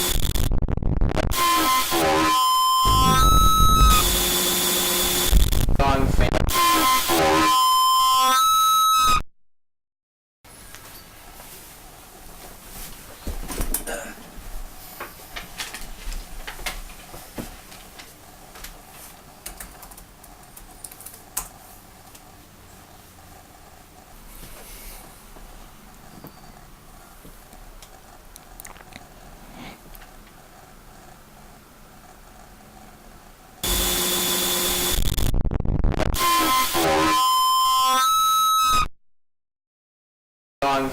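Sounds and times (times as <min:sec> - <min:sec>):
harsh distorted electronic noise: 0:00.0 - 0:09.2, 0:33.6 - 0:38.9
high-pitched electronic tones: 0:01.3 - 0:09.2, 0:33.6 - 0:38.9.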